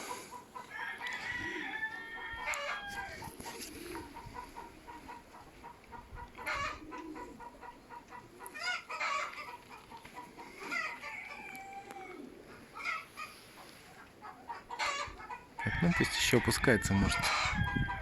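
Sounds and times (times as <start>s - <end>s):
chickens clucking: 0.0s - 18.0s.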